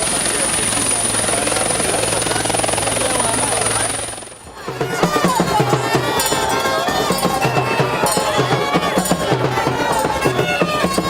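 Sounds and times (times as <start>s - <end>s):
helicopter engine flutter: 0.0s - 11.0s
music with percussion: 4.6s - 11.0s.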